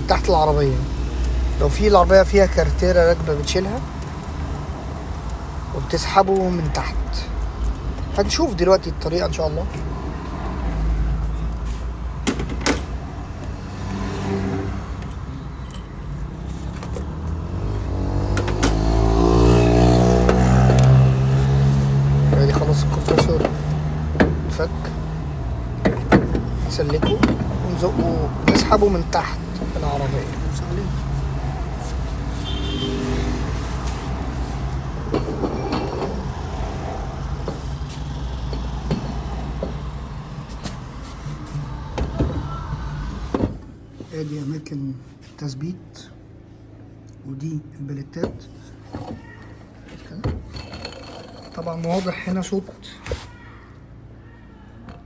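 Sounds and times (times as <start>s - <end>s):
metal tools clinking: 15.0s - 19.6s, 21.8s - 31.2s, 33.6s - 37.9s, 50.4s - 52.2s.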